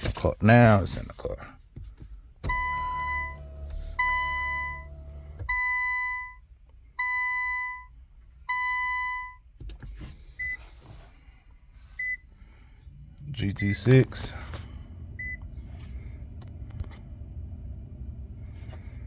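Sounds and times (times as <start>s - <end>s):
dashboard warning chime: 2.5s - 6.4s
low hum: 12.9s - 19.0s.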